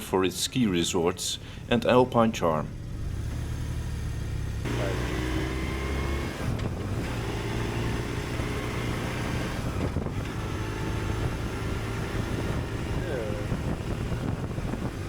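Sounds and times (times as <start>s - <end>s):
motorcycle engine humming: 0.0s - 15.0s
wind noise: 6.0s - 15.0s.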